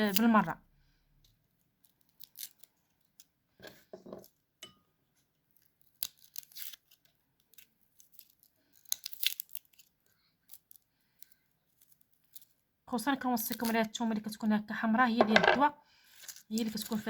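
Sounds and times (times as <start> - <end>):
garlic crackling and scraping: 1.1 - 4.4, 5.5 - 12.7, 15.2 - 17.0.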